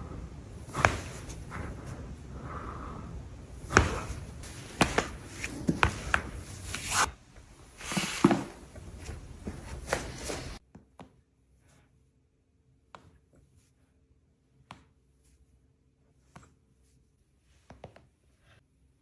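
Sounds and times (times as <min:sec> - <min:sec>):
low background hum: 0:00.0 - 0:10.6
rustling: 0:00.0 - 0:10.6.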